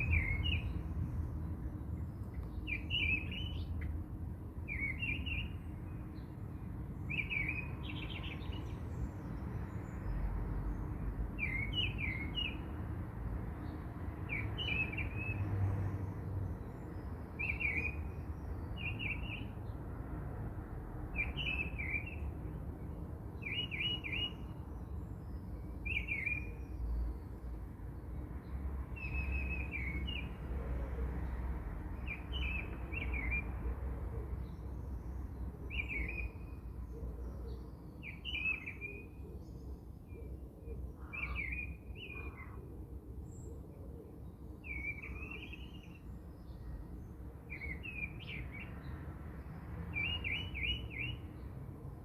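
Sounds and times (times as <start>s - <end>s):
bird chirping: 0.0s - 1.0s, 2.1s - 3.9s, 49.9s - 51.5s.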